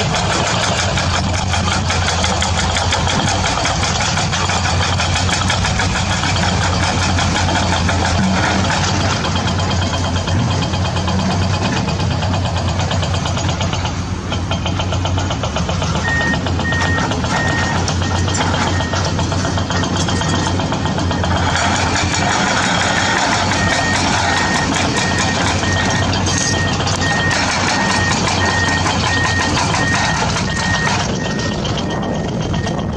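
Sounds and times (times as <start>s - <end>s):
engine knocking: 0.0s - 32.9s
high beeps: 16.0s - 19.1s, 22.9s - 32.9s.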